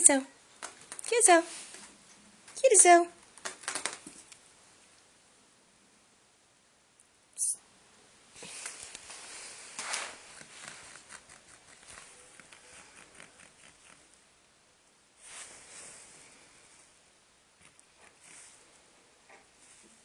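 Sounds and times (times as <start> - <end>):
rustling: 0.5 - 2.6, 3.2 - 4.4, 8.4 - 14.3, 15.2 - 20.0
cat paws patting and scampering: 0.6 - 2.6, 3.2 - 4.4, 8.4 - 14.2.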